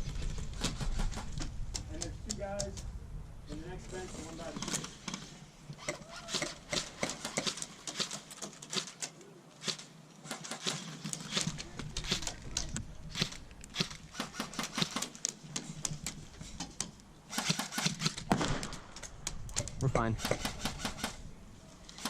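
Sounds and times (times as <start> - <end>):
airsoft gunfire clicks and snaps: 5.8 - 21.2.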